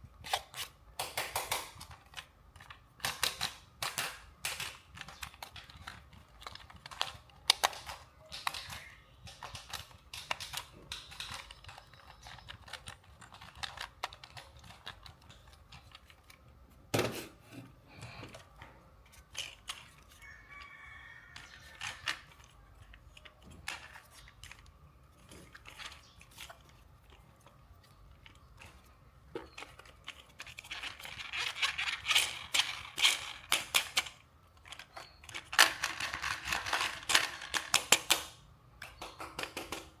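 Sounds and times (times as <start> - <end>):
clicks and taps: 1.0 - 16.4, 37.5 - 40.0
toy packaging rustling and tearing: 1.6 - 16.5, 18.3 - 38.2.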